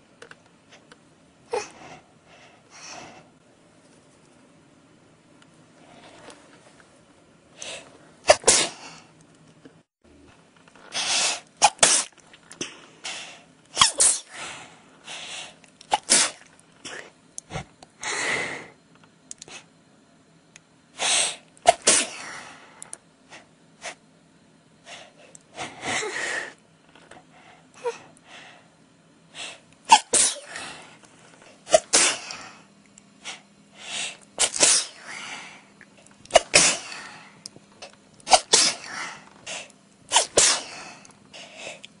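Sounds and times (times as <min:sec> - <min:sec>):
person sneezing: 0:08.3 - 0:08.9, 0:10.9 - 0:12.9, 0:13.8 - 0:14.4, 0:15.9 - 0:17.1, 0:21.0 - 0:22.5, 0:29.9 - 0:30.8, 0:31.6 - 0:32.6, 0:34.4 - 0:35.3, 0:36.3 - 0:37.2, 0:38.3 - 0:41.0
breaths and sniffs: 0:38.3 - 0:41.9.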